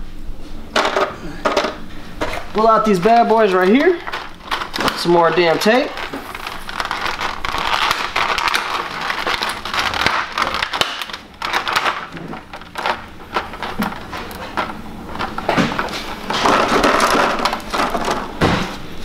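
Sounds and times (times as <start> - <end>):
plastic crinkling: 2.3 - 19.0
sticky tape peeling: 3.7 - 18.0.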